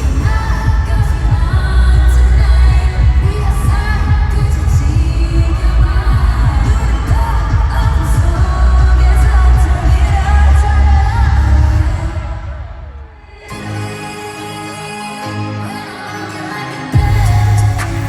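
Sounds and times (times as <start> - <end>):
pop backing track with heavy bass: 0.0 - 12.6, 16.9 - 18.0
girl group singing live: 0.0 - 18.0.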